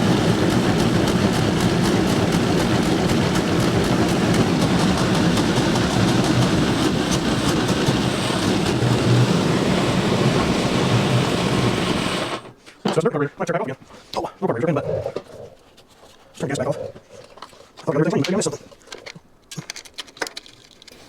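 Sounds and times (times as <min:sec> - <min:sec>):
go-kart engine running: 0:00.0 - 0:12.5.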